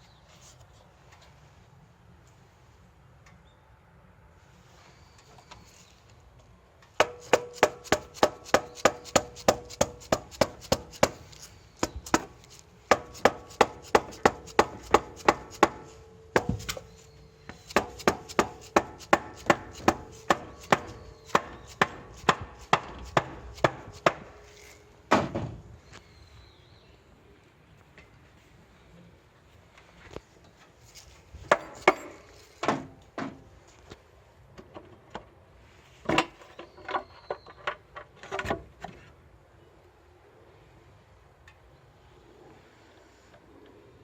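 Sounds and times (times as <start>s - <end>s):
sharp ringing knocks: 12.9s - 24.3s.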